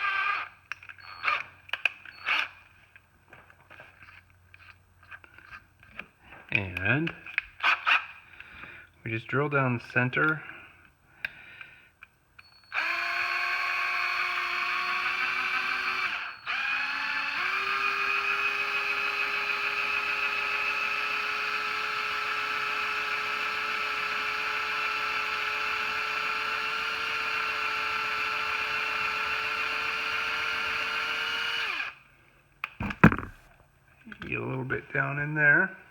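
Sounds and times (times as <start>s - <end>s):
small electric drill whining: 0.0s - 2.6s, 12.4s - 32.0s, 32.8s - 33.4s.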